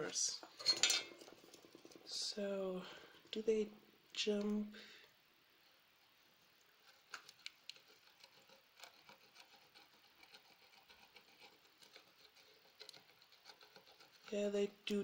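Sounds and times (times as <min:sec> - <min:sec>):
low hiss: 0:00.0 - 0:08.1
small clicks and ticks: 0:06.8 - 0:15.0.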